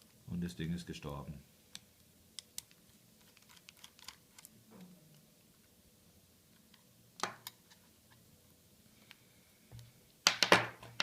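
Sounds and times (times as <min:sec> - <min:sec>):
small metal parts clicking: 0:03.2 - 0:04.5.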